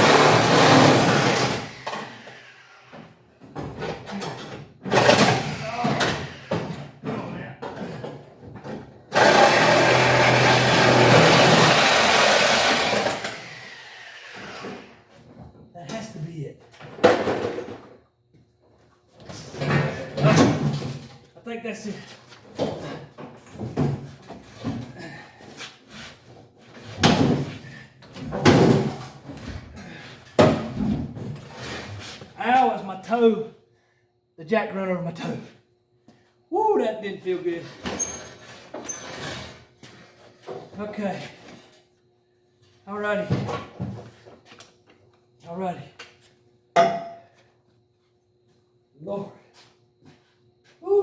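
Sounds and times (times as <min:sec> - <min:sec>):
power tool cutting sheet metal: 0:00.0 - 0:02.7, 0:09.1 - 0:14.9.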